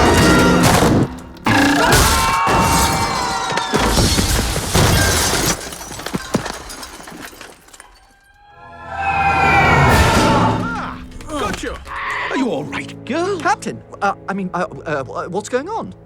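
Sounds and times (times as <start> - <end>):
film music: 0.0 - 3.4, 8.3 - 16.0
crashing and shattering effects: 0.0 - 8.4, 9.7 - 12.0.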